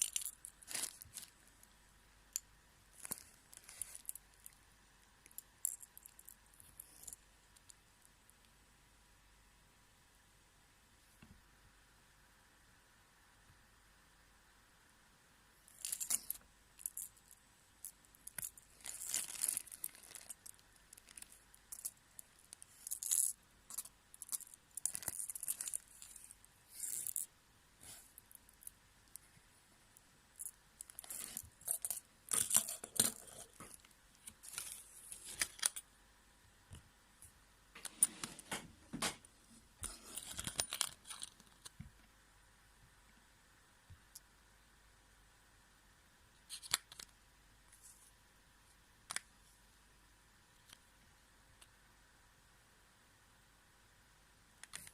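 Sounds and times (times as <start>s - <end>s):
small hard items rattling: 0.0s - 1.5s, 15.8s - 27.3s.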